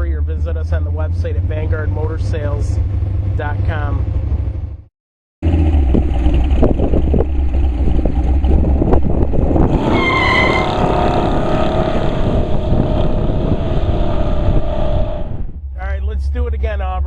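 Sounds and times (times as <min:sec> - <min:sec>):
car engine rumbling: 0:00.0 - 0:17.0
tyre squeal: 0:09.8 - 0:11.1.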